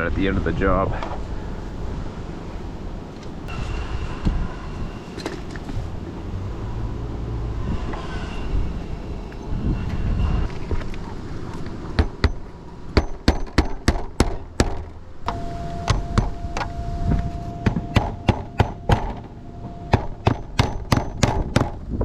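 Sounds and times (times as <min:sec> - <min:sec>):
hammer driving nails into shingles: 0:13.0 - 0:14.9, 0:19.9 - 0:21.8.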